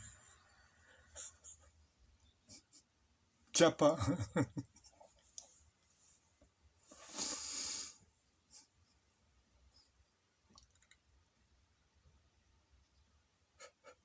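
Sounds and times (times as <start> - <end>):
faint clicks: 10.5 - 11.1.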